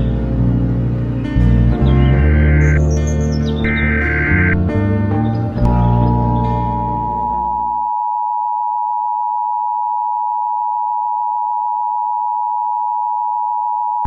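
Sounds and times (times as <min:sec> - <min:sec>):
music: 0:00.0 - 0:07.8
two-tone attention signal: 0:03.6 - 0:04.7, 0:06.1 - 0:08.8.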